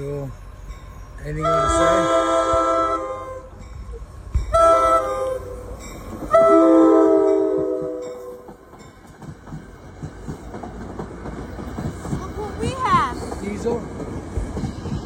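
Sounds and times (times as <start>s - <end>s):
train rumbling on rails: 0.0s - 15.0s
locomotive air horn: 1.4s - 3.6s, 4.5s - 5.7s, 6.3s - 8.5s.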